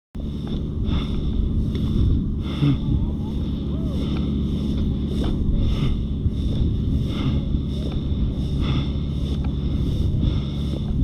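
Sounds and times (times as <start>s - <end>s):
wind rumble on microphone: 0.2s - 11.0s
footsteps rustling through brush: 3.2s - 11.0s.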